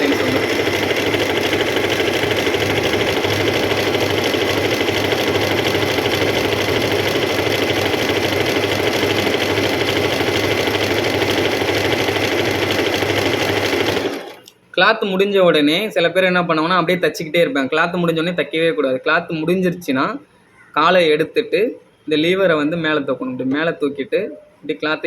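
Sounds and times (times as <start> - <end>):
sewing machine running: 0.0 - 14.5.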